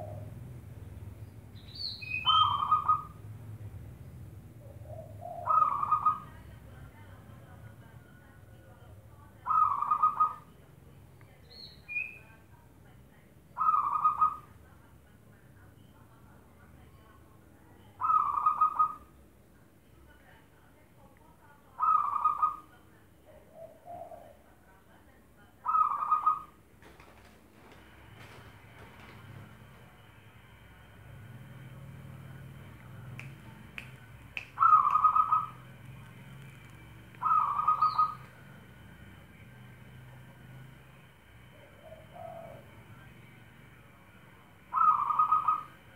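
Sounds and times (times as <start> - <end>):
dove cooing: 0.0 - 0.4, 2.2 - 3.2, 4.6 - 6.5, 9.4 - 10.5, 13.6 - 14.5, 18.0 - 19.1, 21.8 - 22.6, 23.3 - 24.4, 25.6 - 30.0, 34.6 - 35.8, 37.2 - 38.5, 41.5 - 42.8, 44.7 - 45.7
bird chirp: 0.0 - 3.2, 4.0 - 6.4, 11.3 - 12.4, 13.5 - 14.5, 33.8 - 38.5, 44.7 - 45.8
faint low hum: 0.0 - 45.9.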